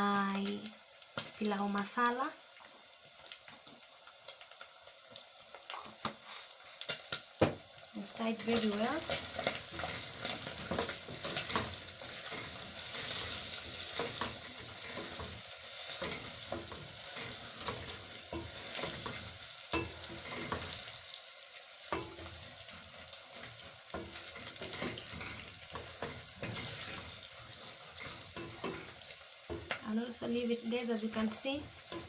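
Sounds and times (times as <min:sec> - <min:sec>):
meat sizzling in hot oil: 0:00.0 - 0:32.0
spoon scraping a pot: 0:23.4 - 0:29.8.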